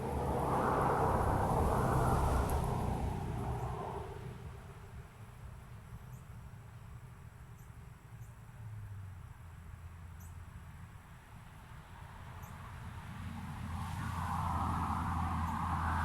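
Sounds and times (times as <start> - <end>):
road vehicle passing: 0.0 - 5.0, 11.9 - 16.0.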